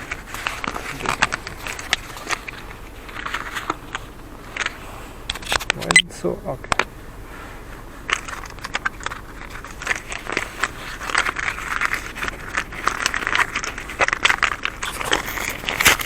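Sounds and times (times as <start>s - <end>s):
plastic rustling and clicking: 0.0s - 6.0s, 8.0s - 16.0s.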